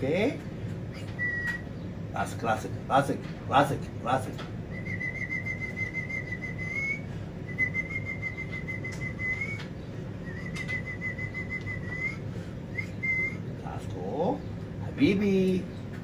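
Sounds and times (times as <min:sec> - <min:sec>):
parrot whistling: 0:00.9 - 0:01.7, 0:04.7 - 0:13.5.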